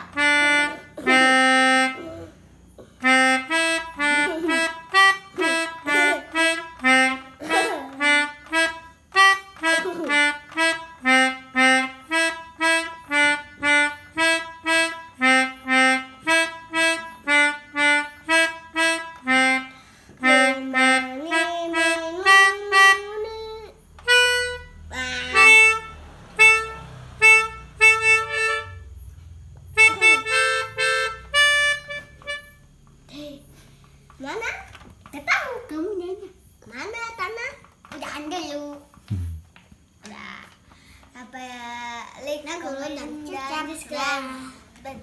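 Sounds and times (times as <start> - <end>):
melodica repeated notes: 0.0 - 33.1.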